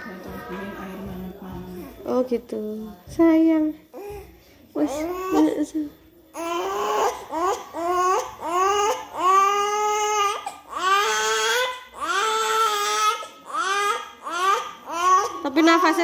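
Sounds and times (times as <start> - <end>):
baby crying: 4.9 - 5.6, 6.4 - 16.0.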